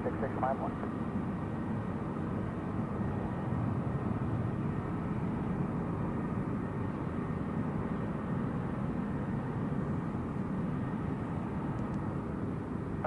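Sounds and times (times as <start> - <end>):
distant jet airliner rumble: 0.0 - 13.0.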